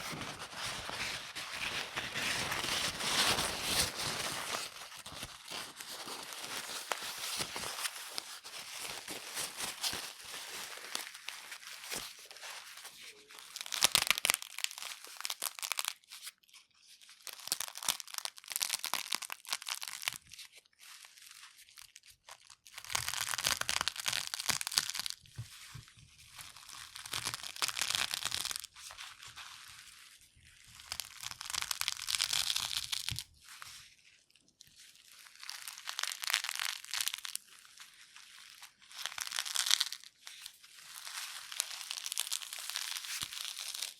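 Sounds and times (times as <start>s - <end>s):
paper towel crinkling: 0.0s - 14.4s.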